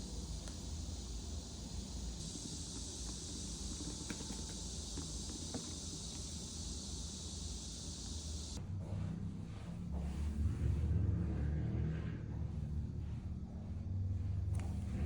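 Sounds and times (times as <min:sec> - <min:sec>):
high hiss-like drone: 0:00.0 - 0:08.6.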